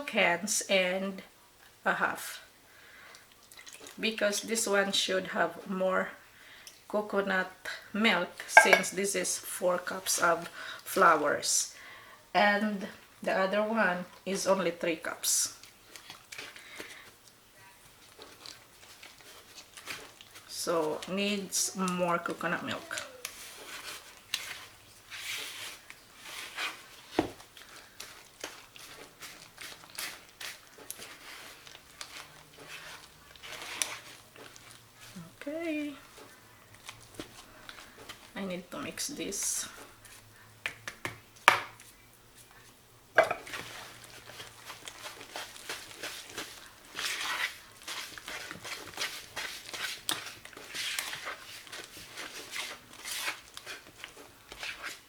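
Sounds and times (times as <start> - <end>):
batter mixing in a bowl: 3.1 - 4.4, 7.8 - 11.6, 12.8 - 55.0
spoon scraping a container: 8.6 - 9.0.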